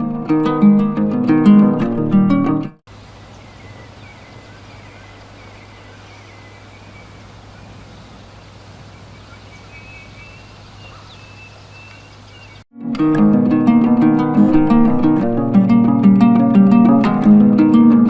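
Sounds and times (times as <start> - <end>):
plucked-string music: 0.0 - 2.8, 12.7 - 18.0
background hiss: 2.9 - 12.6
faint high bird chirps: 3.1 - 12.6.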